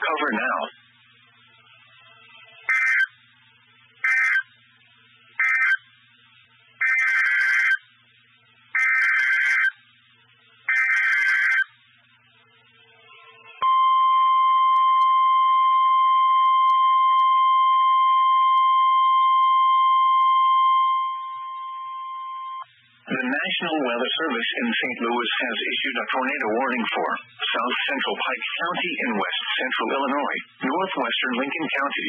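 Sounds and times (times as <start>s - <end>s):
steady warning alarm tone: 2.4s - 3.2s, 4.0s - 4.5s, 5.4s - 5.9s, 6.8s - 7.8s, 8.8s - 9.8s, 10.7s - 11.8s, 12.8s - 22.7s.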